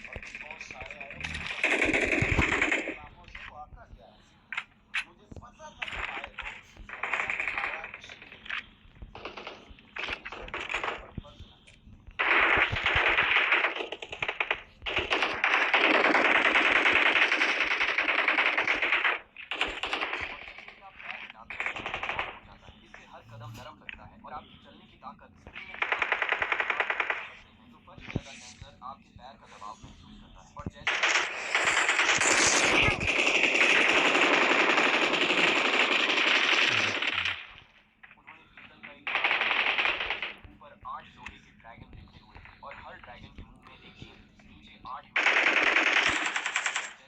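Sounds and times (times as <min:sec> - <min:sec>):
rapid automatic gunfire: 0:00.0 - 0:03.4, 0:05.8 - 0:11.3, 0:12.2 - 0:23.1, 0:25.4 - 0:27.4, 0:30.8 - 0:40.5, 0:45.2 - 0:47.0.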